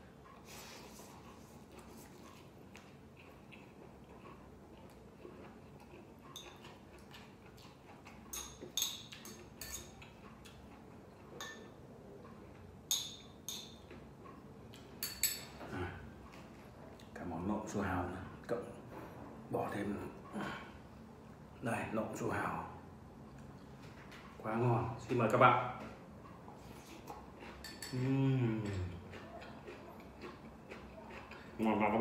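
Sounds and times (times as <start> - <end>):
utensils clinking against dishes: 6.2 - 7.2, 8.3 - 10.2, 11.4 - 11.8, 12.9 - 14.0, 14.7 - 15.8, 27.4 - 29.0.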